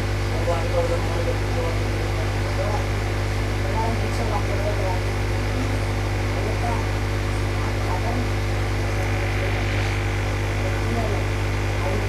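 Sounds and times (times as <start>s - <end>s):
electrical mains hum: 0.0s - 12.0s.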